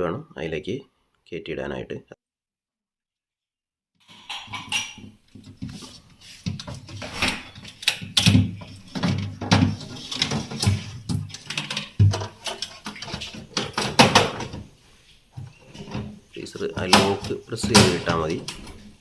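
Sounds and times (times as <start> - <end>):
plastic parts clicking and scraping: 5.4 - 14.7.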